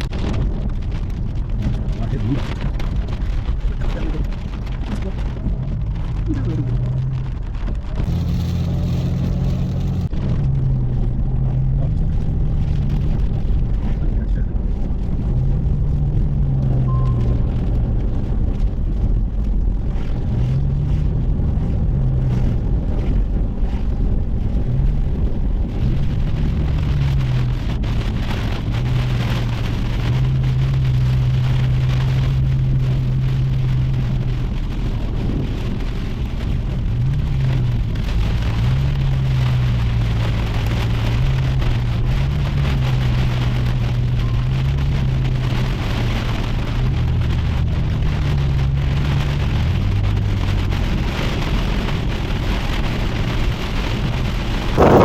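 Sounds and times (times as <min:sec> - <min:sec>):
rain falling steadily: 0:00.0 - 0:55.0
low wandering hum: 0:54.8 - 0:55.0.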